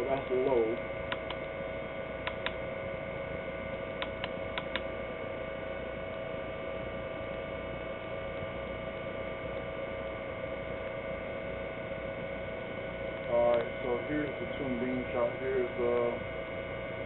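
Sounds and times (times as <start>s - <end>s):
steady electrical hum: 0.0s - 17.0s
flashlight button clicking: 2.2s - 2.6s, 4.0s - 4.8s.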